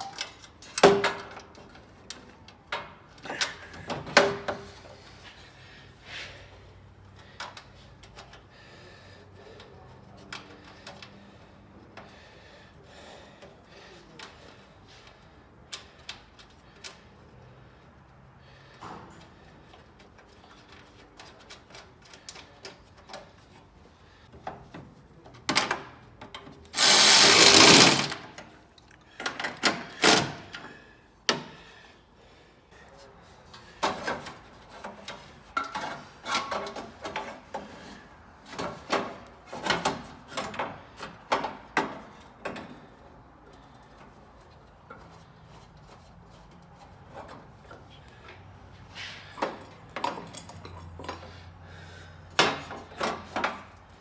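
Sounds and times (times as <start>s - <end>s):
tools clinking on metal: 0.0s - 1.1s.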